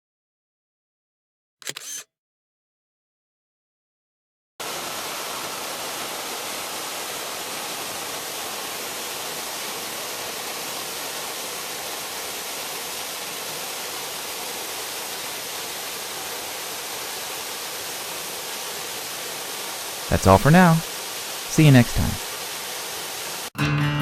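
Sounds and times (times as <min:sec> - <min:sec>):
waterfall rushing: 0:04.6 - 0:23.5.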